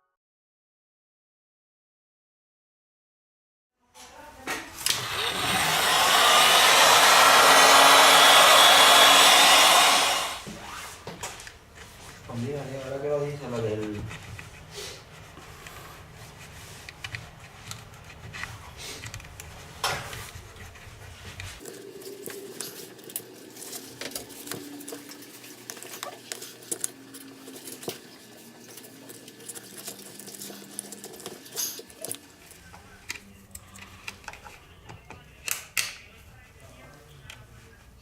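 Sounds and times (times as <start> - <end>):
small clicks taps and scrapes: 16.8 - 21.5.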